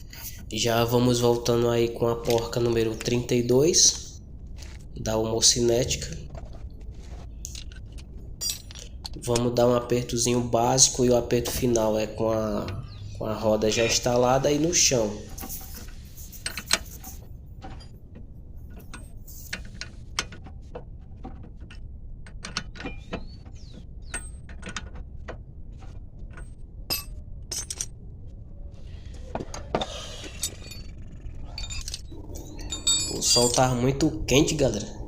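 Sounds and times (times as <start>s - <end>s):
metal clinks: 7.5s - 9.2s, 26.3s - 28.0s, 30.1s - 33.8s.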